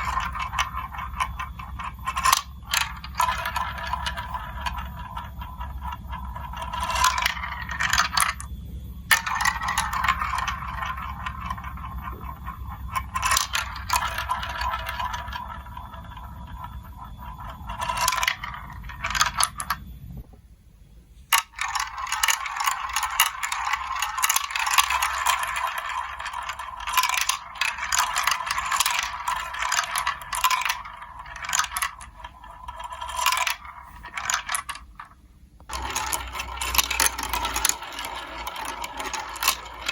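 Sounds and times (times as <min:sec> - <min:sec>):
marbles rattling along plastic track: 0:00.0 - 0:08.5, 0:09.1 - 0:19.8, 0:21.3 - 0:39.9.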